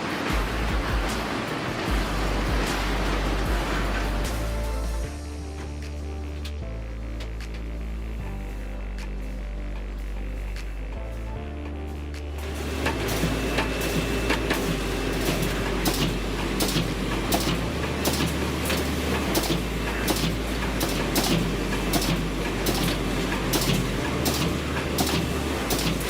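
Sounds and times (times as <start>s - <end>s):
heavy machinery humming: 0.0s - 26.0s
sharp knocks and clatter: 12.8s - 26.0s.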